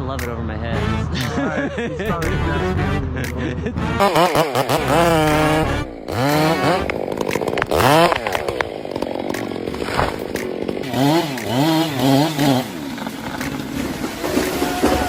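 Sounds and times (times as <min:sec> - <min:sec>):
chainsaw engine revving: 0:04.0 - 0:15.0.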